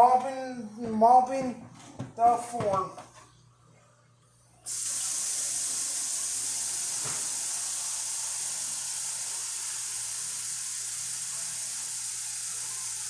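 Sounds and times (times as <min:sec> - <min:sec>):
tap running into bucket: 0:04.7 - 0:13.0.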